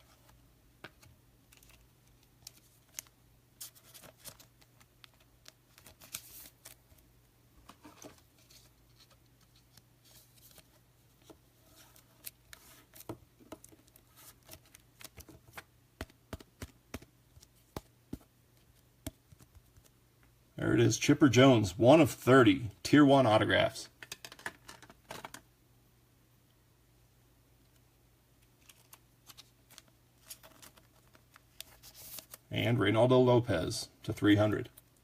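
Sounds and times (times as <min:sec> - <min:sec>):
cards clicking and rustling: 0:00.2 - 0:07.0, 0:07.7 - 0:20.0, 0:28.5 - 0:32.4
low steady hum: 0:24.8 - 0:35.0.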